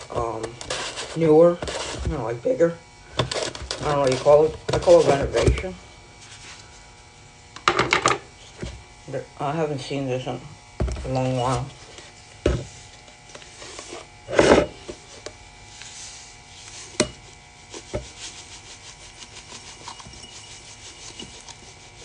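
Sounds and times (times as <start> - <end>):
objects scraping and rubbing: 0.1 - 2.2, 3.2 - 5.6, 6.2 - 6.8, 11.2 - 22.0.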